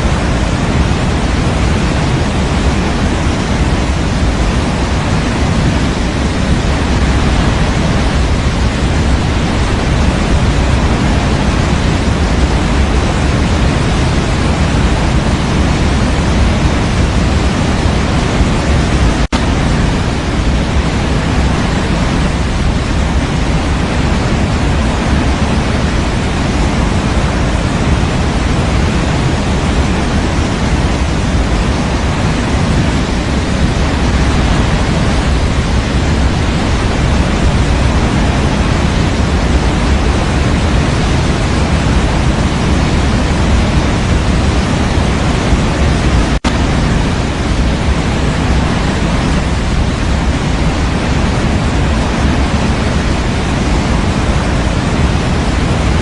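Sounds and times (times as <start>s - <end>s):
white noise hiss: 0.0s - 56.0s.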